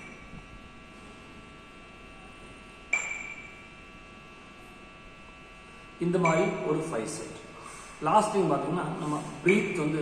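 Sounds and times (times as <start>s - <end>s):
steady electrical hum: 0.0s - 10.0s
bell-like ping: 3.0s - 3.6s, 6.2s - 6.6s.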